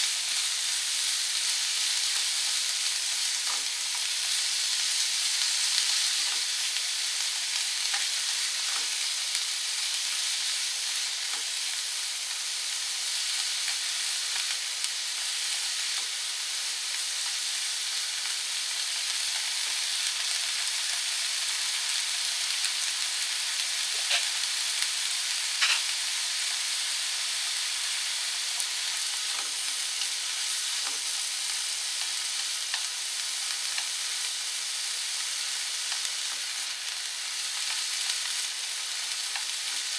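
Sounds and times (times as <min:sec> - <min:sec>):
peppers sizzling in a pan: 0:00.0 - 0:39.9
utensil clicking against pan: 0:23.9 - 0:24.4, 0:25.6 - 0:25.9.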